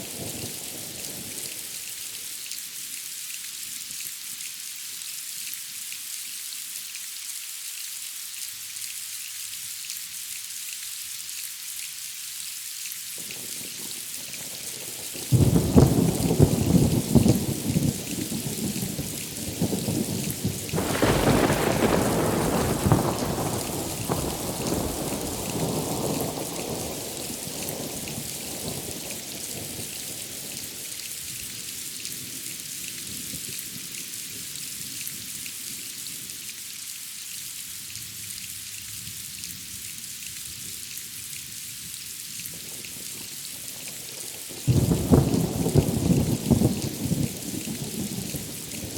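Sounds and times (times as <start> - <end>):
heavy rain: 0.0 - 48.9
thunder rumbling: 15.3 - 29.2, 44.7 - 48.9.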